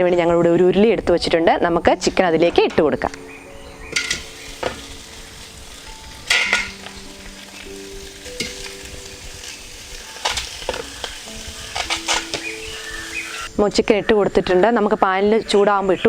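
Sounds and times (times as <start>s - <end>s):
chicken sizzling in hot pan: 3.8s - 13.5s
clatter of pieces dropped in pan: 6.3s - 7.0s.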